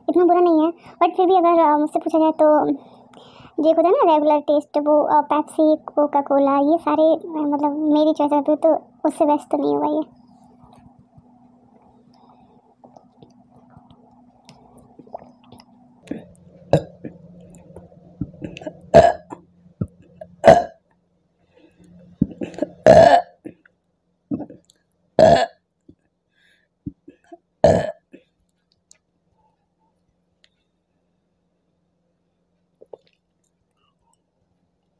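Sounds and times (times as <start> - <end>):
woman burping: 16.1 - 17.2, 18.4 - 19.4, 20.2 - 20.8, 22.2 - 23.7, 24.3 - 24.6, 25.2 - 25.6, 27.1 - 28.2.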